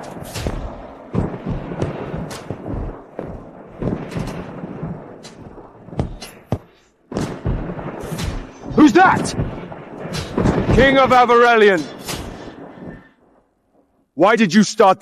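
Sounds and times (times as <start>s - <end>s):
low rumble: 0.0s - 13.9s
heavy drum hits and booms: 0.3s - 11.1s.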